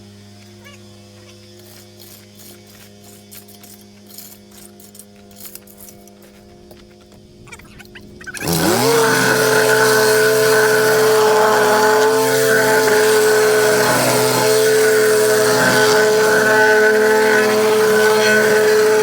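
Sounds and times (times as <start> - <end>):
small engine running steadily: 0.0 - 19.0.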